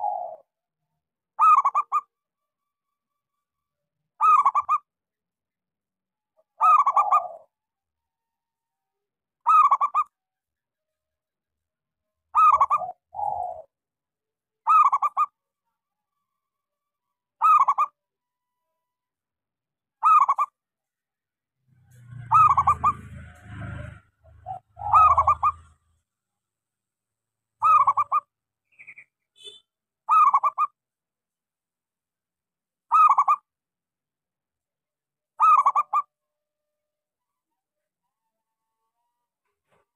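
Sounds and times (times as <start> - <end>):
dove cooing: 0.0 - 0.5, 6.6 - 7.6, 12.4 - 13.8, 22.3 - 25.8, 27.6 - 28.2.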